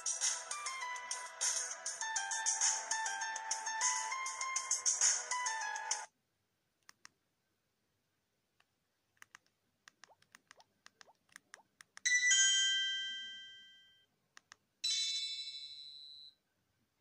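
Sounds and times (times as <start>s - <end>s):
keypad clicks: 9.2s - 12.1s.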